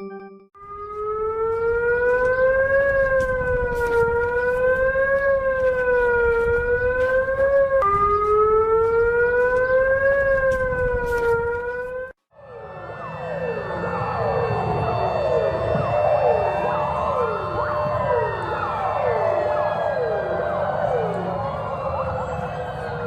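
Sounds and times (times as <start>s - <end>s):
warning siren wailing: 0.6s - 23.0s
crackle: 0.8s - 12.1s.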